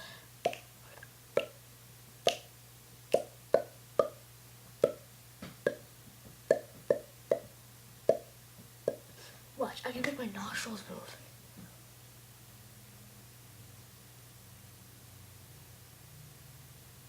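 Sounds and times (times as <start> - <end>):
mouth popping sounds: 0.4 - 1.6, 2.2 - 2.5, 3.1 - 4.2, 4.8 - 5.9, 6.5 - 9.1.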